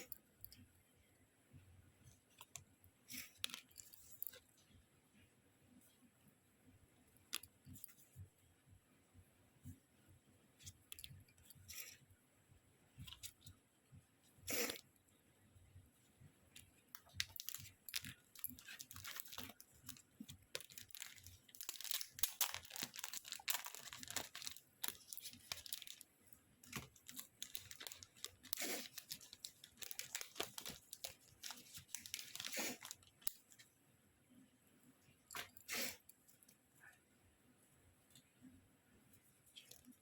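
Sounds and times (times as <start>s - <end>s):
packaging crinkling and tearing: 17.0s - 33.6s.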